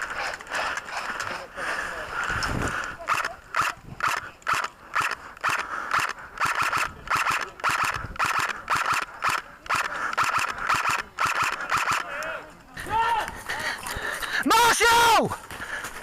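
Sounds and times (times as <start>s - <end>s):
running footsteps: 12.8s - 14.5s, 15.2s - 16.0s.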